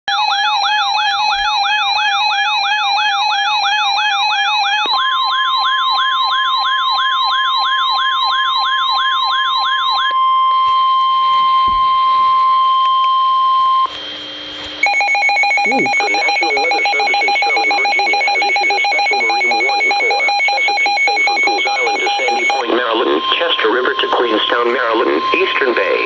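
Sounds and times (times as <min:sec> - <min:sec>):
steady alarm beep tone: 0:00.1 - 0:13.9, 0:14.8 - 0:26.0
warbling siren-like alarm: 0:00.1 - 0:26.0.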